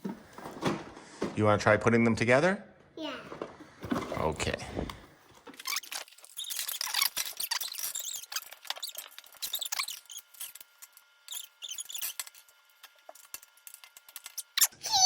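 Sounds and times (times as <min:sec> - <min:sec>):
high squeaks: 0:05.6 - 0:10.6, 0:11.3 - 0:12.5.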